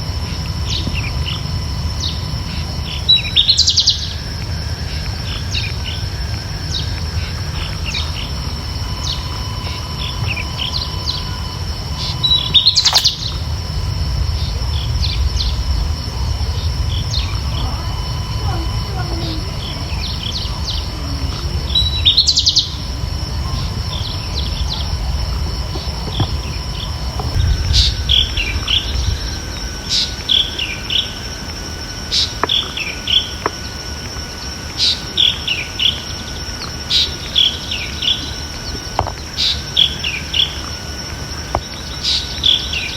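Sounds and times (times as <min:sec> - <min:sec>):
buzzy bird trill: 0:00.0 - 0:42.9
low background rumble: 0:00.0 - 0:42.9
steady high whine: 0:00.0 - 0:42.9
bird chirping: 0:00.2 - 0:31.3.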